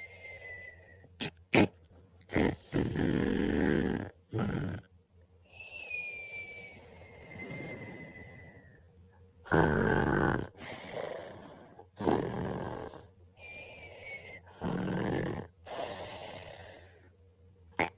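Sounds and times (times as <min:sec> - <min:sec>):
quiet breaths: 0:00.0 - 0:01.2, 0:04.8 - 0:17.7
person snoring: 0:02.3 - 0:04.9, 0:09.4 - 0:13.6, 0:14.2 - 0:17.0.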